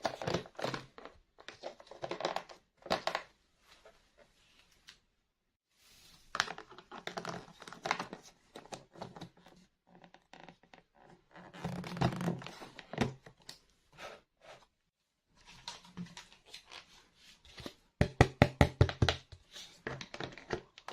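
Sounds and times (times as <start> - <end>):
handling plastic toys and packaging: 0.0 - 4.6, 6.1 - 13.6, 18.9 - 20.9.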